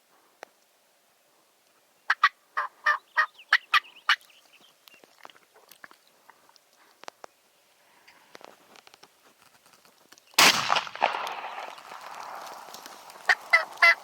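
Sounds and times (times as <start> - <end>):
turkey calling: 2.1 - 4.4, 13.0 - 14.0.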